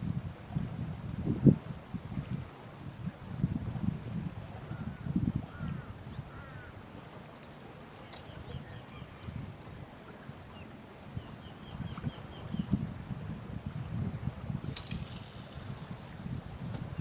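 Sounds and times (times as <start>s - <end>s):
insect trilling: 7.0s - 10.7s, 11.3s - 13.0s.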